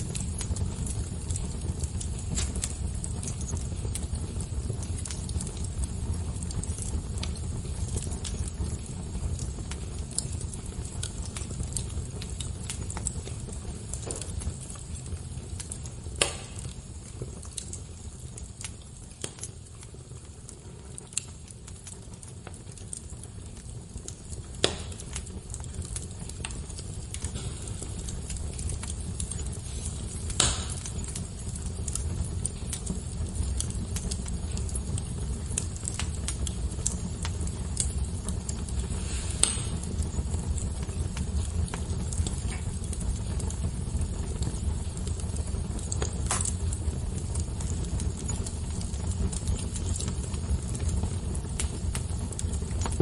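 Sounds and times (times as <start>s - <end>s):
fire pops: 0.0s - 53.0s
wood fire crackling: 0.0s - 53.0s.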